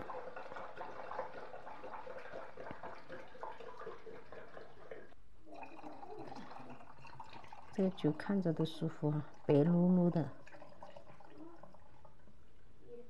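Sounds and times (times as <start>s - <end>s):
liquid pouring into a bottle: 0.0s - 12.3s.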